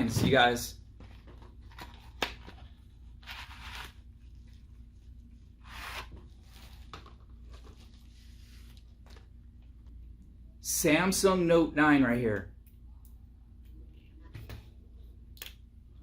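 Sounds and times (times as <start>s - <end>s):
packaging rustling and tearing: 1.2s - 4.4s.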